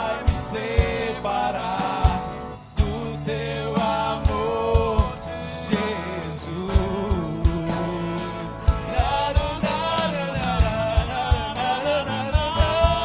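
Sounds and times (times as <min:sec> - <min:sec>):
drum kit steady beat: 0:00.0 - 0:13.0
pop-rock band playing: 0:00.0 - 0:13.0.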